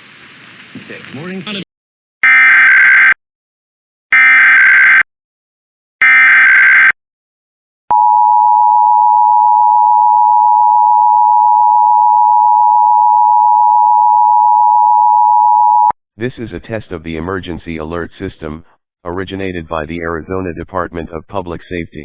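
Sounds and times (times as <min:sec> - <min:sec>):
loud steady attention tone: 0:07.9 - 0:15.9.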